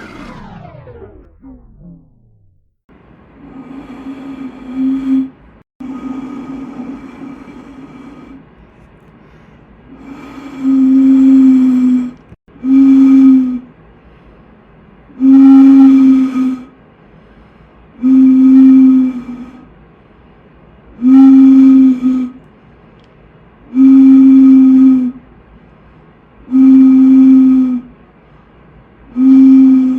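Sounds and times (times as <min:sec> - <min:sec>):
low-pitched horn blasts: 0:00.0 - 0:02.7.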